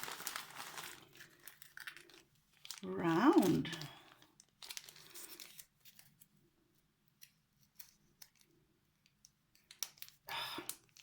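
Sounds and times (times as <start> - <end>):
packaging rustling: 0.0 - 6.4.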